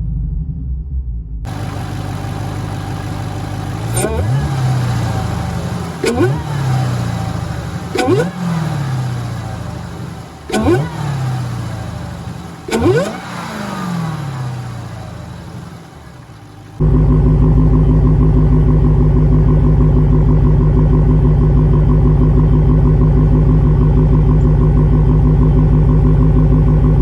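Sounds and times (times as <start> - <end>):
deep engine note: 0.0 - 27.0
car engine revving: 1.5 - 20.7.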